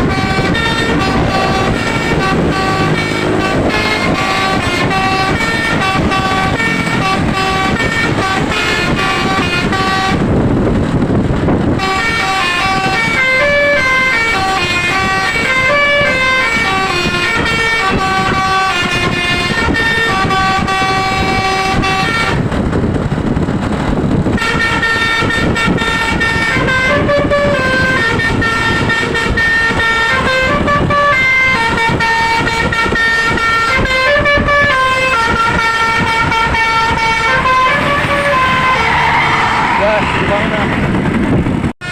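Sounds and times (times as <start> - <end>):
low rumble: 0.0 - 12.0, 34.2 - 41.8
bus multi-tone horn tune: 0.0 - 40.4.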